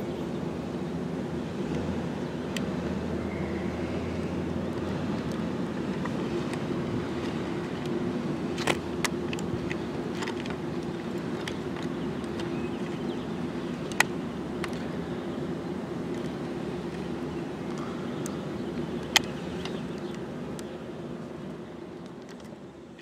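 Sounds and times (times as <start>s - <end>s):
vehicle engine running: 0.0s - 23.0s
sharp clicks: 17.7s - 20.8s.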